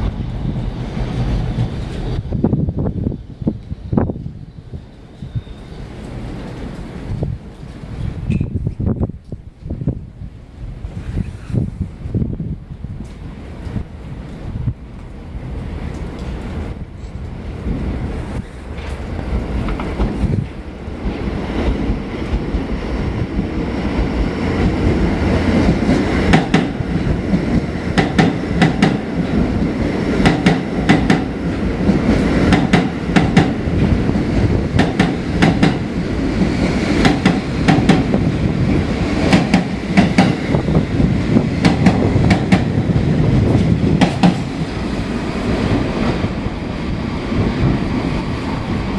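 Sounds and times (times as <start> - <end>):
subway train rumbling: 0.0 - 48.9
wheels clacking over rail joints: 18.4 - 22.8, 24.0 - 33.8, 34.7 - 46.2.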